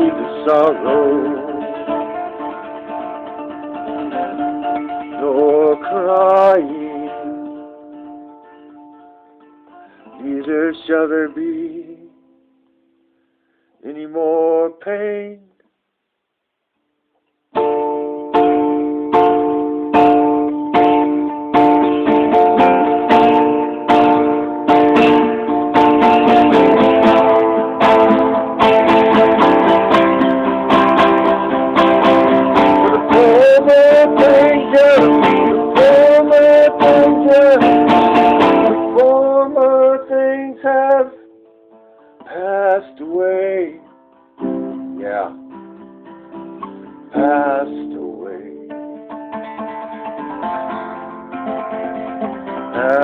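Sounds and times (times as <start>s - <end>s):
person singing: 0.0s - 8.8s, 9.7s - 12.3s, 13.8s - 15.6s, 19.3s - 41.3s, 42.2s - 44.0s, 46.6s - 49.2s, 49.8s - 53.0s
strummed acoustic guitar: 0.0s - 13.2s, 17.5s - 53.0s.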